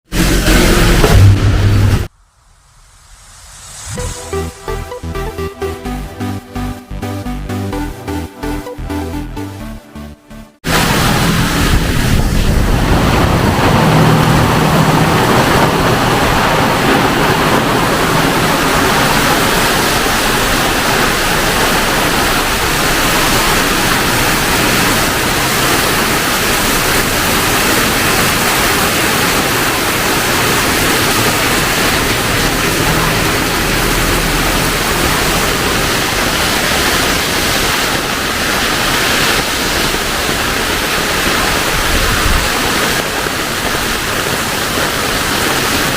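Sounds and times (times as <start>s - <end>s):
heavy rain pouring: 0.0s - 2.1s, 10.6s - 45.9s
low hum: 0.1s - 10.1s, 30.5s - 36.9s.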